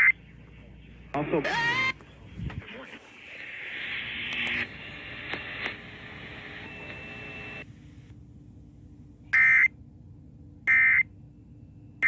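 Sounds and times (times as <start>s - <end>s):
radio static hiss: 0.6s - 8.1s.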